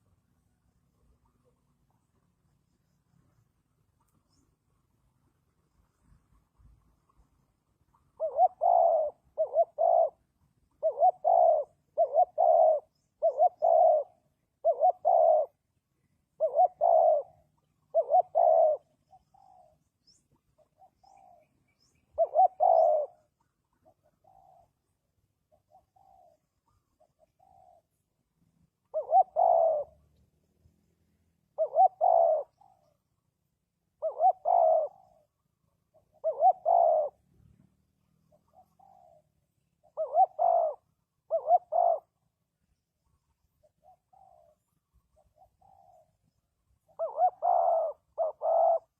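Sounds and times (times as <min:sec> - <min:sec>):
dove cooing: 0:06.9 - 0:30.2, 0:31.4 - 0:48.9.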